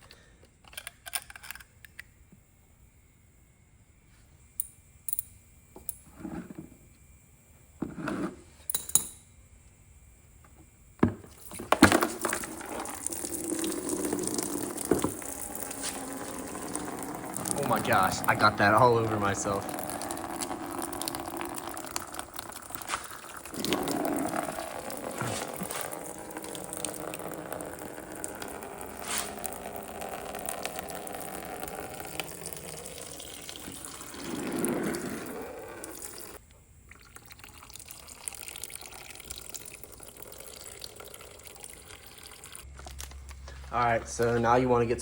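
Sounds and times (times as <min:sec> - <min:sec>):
coolant pouring into a bucket: 0:11.3 - 0:43.1.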